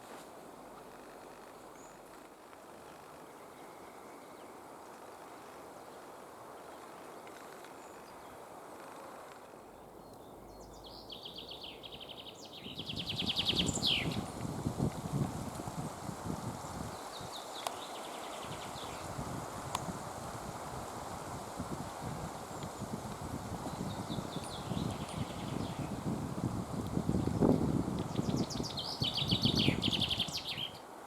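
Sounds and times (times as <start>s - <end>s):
faint outdoor background: 0.0s - 31.0s
songbird trilling: 10.0s - 14.4s, 28.1s - 30.8s.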